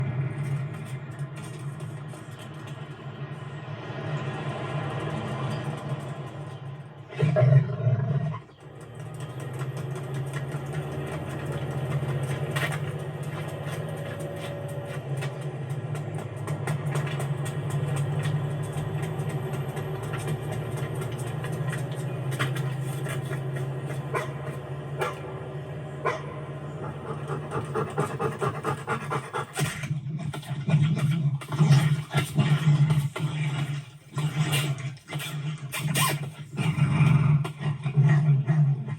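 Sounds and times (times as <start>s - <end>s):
low engine drone: 0.0s - 34.8s
sharp clicks and knocks: 8.5s - 25.5s
dog panting: 26.0s - 35.4s.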